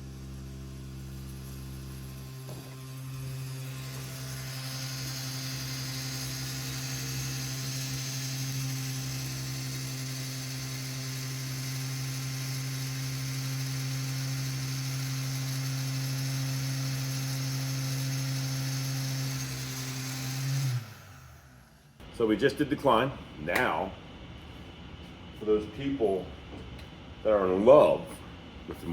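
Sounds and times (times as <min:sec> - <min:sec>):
heat gun running: 0:00.0 - 0:24.5.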